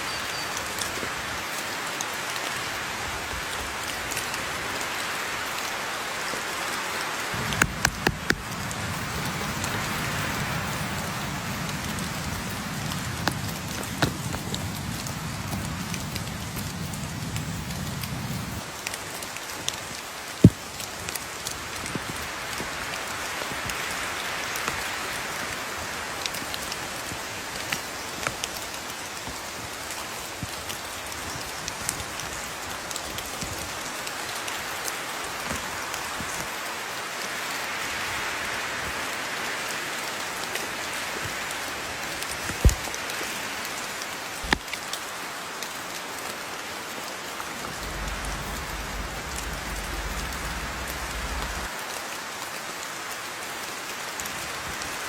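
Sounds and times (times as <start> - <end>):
steady rain: 0.0 - 55.0
sharp knocks: 7.4 - 8.5.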